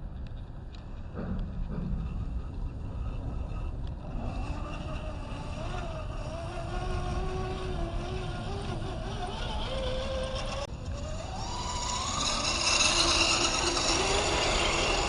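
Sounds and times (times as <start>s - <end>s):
low rumbling noise: 0.0s - 15.0s
electric motor whine: 3.5s - 15.0s.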